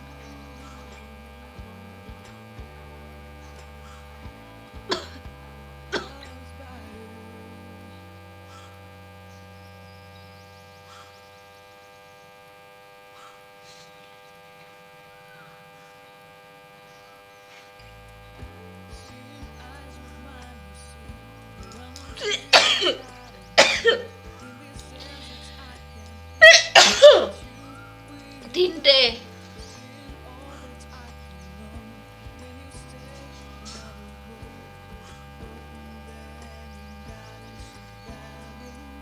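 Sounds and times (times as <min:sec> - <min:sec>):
steady electrical hum: 0:00.0 - 0:39.0
person sneezing: 0:26.4 - 0:27.3.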